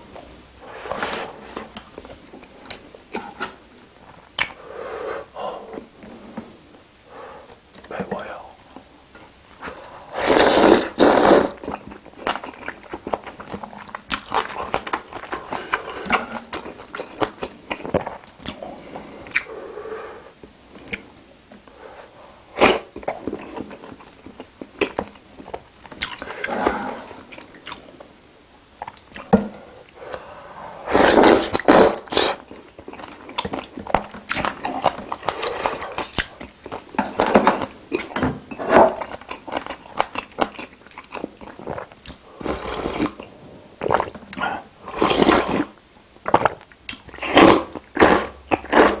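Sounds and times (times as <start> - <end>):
chewing and biting: 31.5 - 38.2, 38.9 - 49.0.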